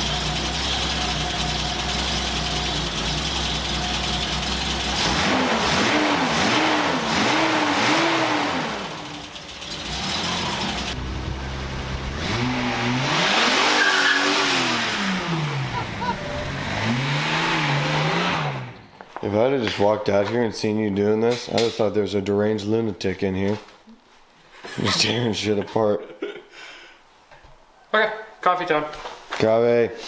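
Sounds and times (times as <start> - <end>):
car engine idling and revving: 0.0 - 18.8.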